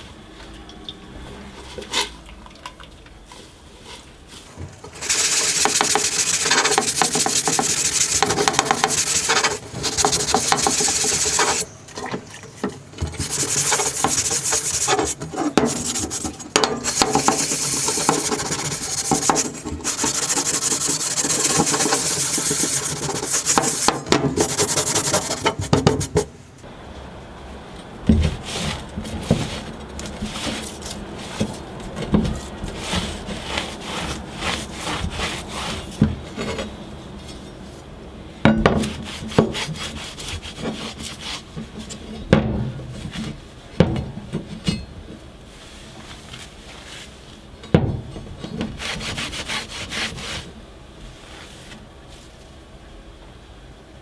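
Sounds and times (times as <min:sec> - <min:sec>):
hand tool rasping workpiece: 0:04.9 - 0:11.7, 0:13.1 - 0:26.2.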